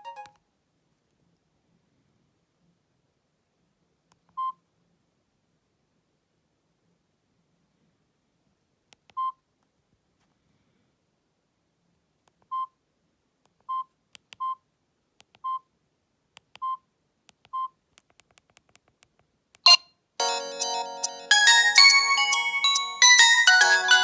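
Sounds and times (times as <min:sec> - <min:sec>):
phone ringtone melody: 0:00.0 - 0:00.4, 0:19.7 - 0:24.0.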